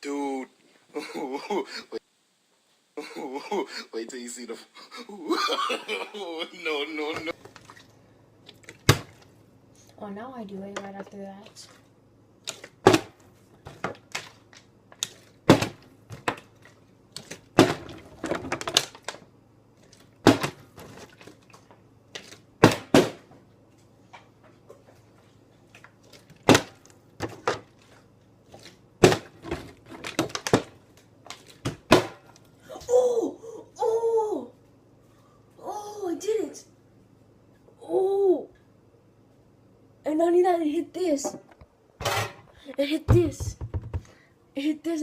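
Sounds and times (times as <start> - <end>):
object bouncing on hard surfaces: 43.1 - 44.1.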